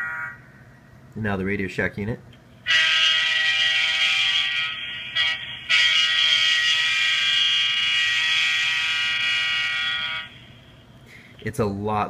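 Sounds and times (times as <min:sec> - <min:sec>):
loud buzzing tone from small speaker: 0:02.6 - 0:10.6.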